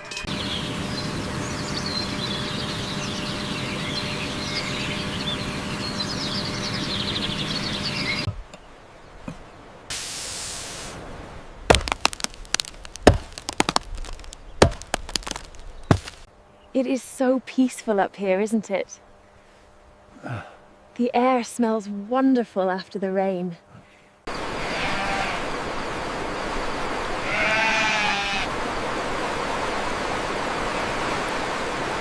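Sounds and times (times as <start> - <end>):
brief hiss: 9.9 - 11.0
sharp knocks and cracks: 11.7 - 16.3.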